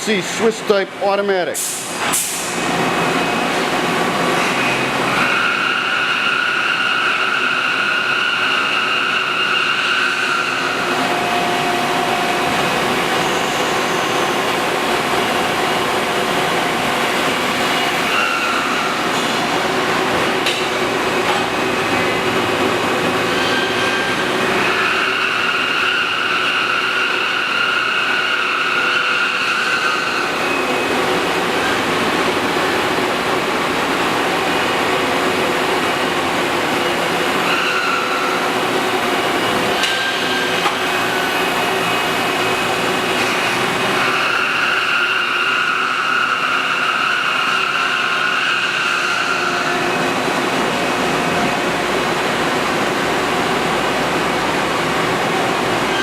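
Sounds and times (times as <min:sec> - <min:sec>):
high machine whine: 0:00.0 - 0:56.0
lathe machine hum and hiss: 0:00.0 - 0:56.0.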